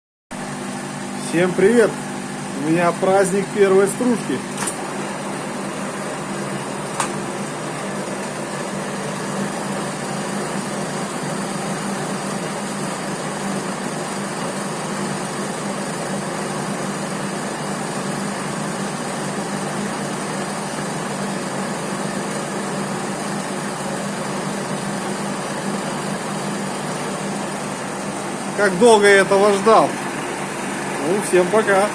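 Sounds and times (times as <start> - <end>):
metal lathe running: 0.4 - 31.9
sharp click: 4.5 - 4.9, 7.0 - 7.2.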